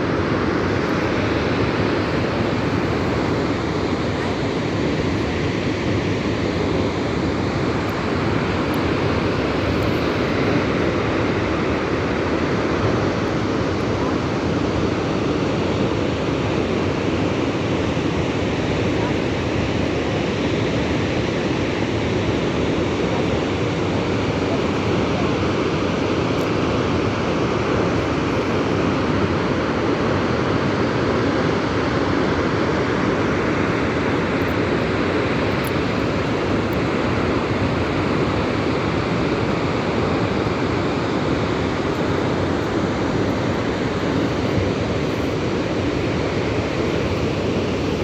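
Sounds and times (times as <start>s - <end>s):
waterfall rushing: 32.8s - 48.0s.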